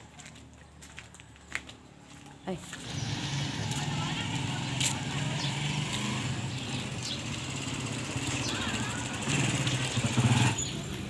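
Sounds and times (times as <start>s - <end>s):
birds chirping: 2.1s - 11.0s
engine running: 2.7s - 11.0s.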